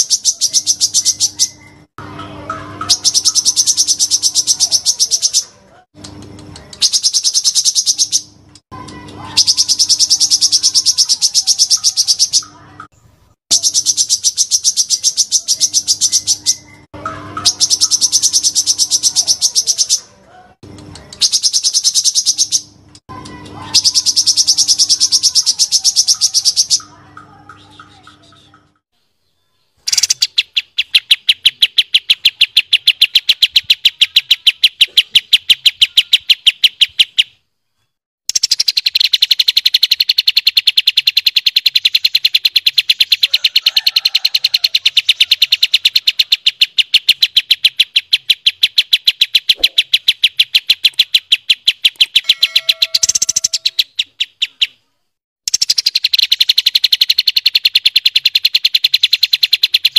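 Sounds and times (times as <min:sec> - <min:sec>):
bird rapid trill: 0:00.0 - 0:01.9, 0:02.5 - 0:05.6, 0:06.6 - 0:12.8, 0:13.5 - 0:20.1, 0:21.0 - 0:28.8, 0:29.8 - 0:37.4, 0:38.3 - 0:54.8, 0:55.4 - 0:59.9
lower bird notes: 0:52.0 - 0:54.2.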